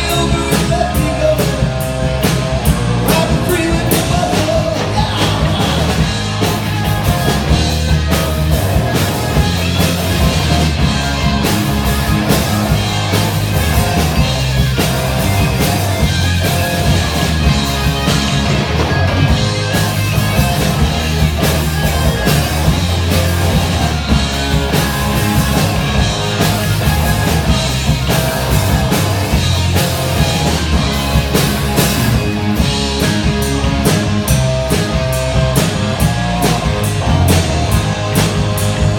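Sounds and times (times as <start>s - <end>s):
instrumental rock music: 0.0s - 38.9s.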